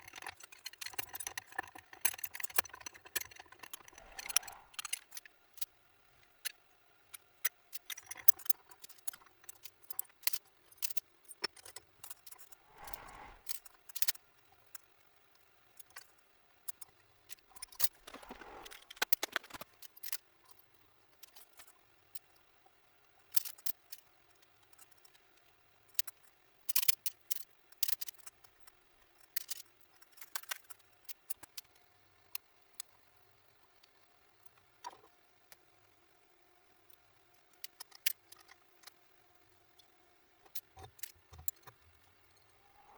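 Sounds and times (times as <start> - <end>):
metal scraping: 3.6 - 5.0, 12.5 - 13.6.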